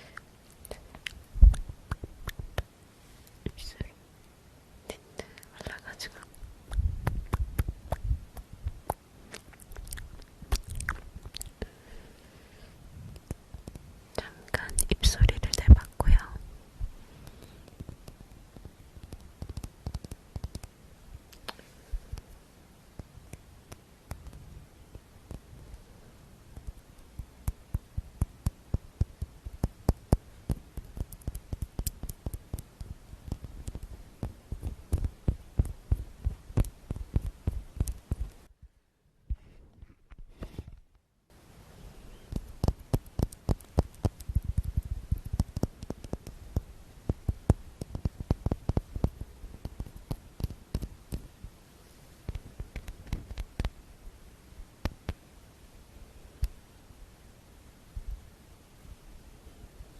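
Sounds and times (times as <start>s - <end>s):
quick irregular taps: 0.0s - 2.7s, 4.9s - 11.8s, 13.0s - 25.8s, 26.5s - 41.0s, 42.2s - 51.6s, 52.2s - 53.8s
dull low thumps: 1.3s - 2.6s, 6.4s - 9.0s.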